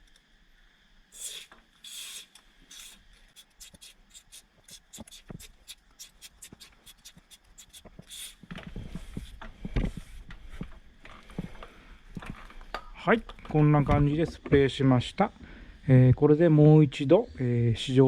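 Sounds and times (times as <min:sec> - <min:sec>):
aerosol can spraying: 0:01.1 - 0:09.4.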